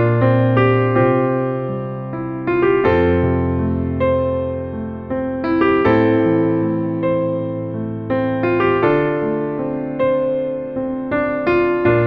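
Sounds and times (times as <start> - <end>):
electric piano chords: 0.0 - 12.0.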